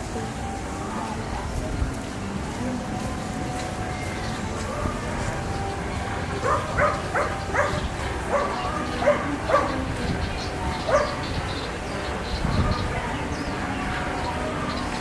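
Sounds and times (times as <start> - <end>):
outdoor background noise: 0.0 - 15.0
dog barking: 6.4 - 10.0, 10.8 - 11.4.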